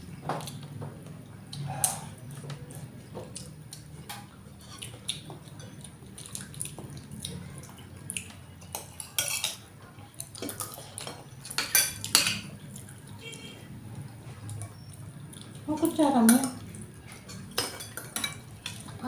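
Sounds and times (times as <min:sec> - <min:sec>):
cutlery clinking on plates: 0:08.3 - 0:12.9, 0:16.2 - 0:19.0.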